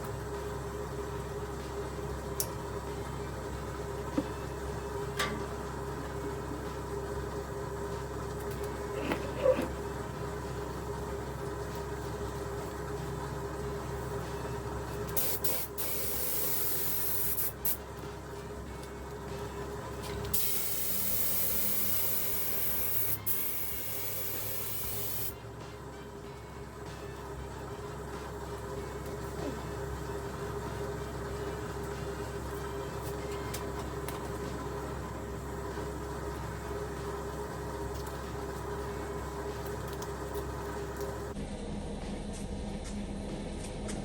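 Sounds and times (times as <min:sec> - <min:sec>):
low steady hum: 0:00.0 - 0:44.0
spray gun hissing: 0:15.2 - 0:17.8, 0:20.3 - 0:25.4.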